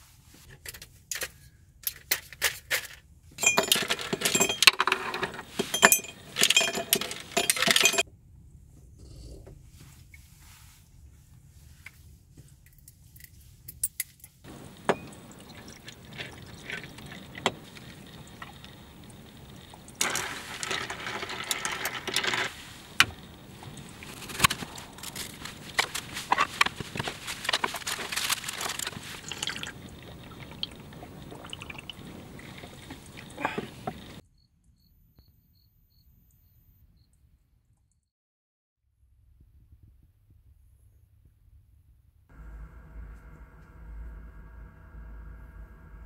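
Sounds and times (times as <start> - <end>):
liquid pouring: 14.5 - 34.2.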